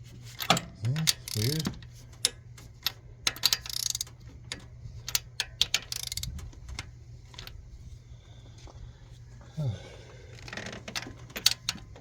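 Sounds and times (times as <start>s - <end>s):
ratchet wrench clicking: 1.0s - 2.4s, 3.2s - 6.9s.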